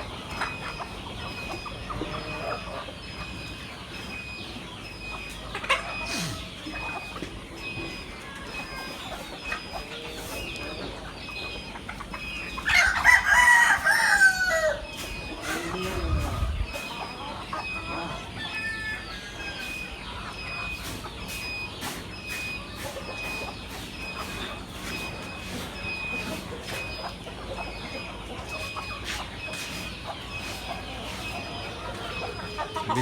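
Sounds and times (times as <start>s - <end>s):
hens clucking: 0.0s - 33.0s
rooster crowing: 12.7s - 16.3s, 18.0s - 19.8s, 32.4s - 33.0s.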